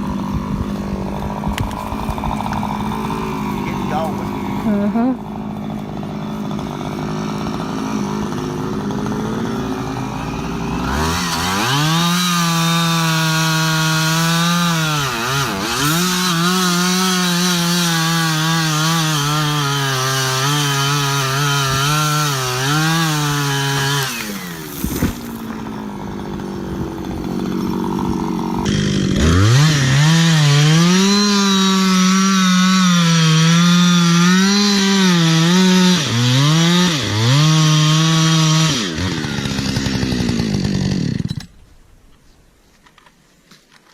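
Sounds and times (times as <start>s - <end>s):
chainsaw revving and cutting: 0.0s - 41.5s.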